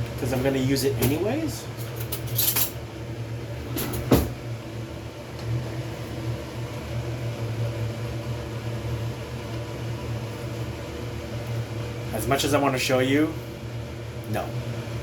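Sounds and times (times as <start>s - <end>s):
low kitchen hum: 0.0s - 15.0s
utensils clattering: 1.8s - 2.8s.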